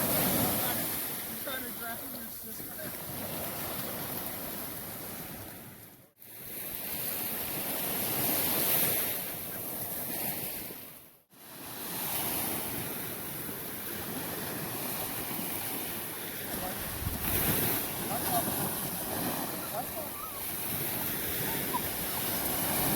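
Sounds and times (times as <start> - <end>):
ocean surf washing onto beach: 0.0 - 5.9, 11.6 - 22.9
wind buffeting microphone: 16.4 - 22.9.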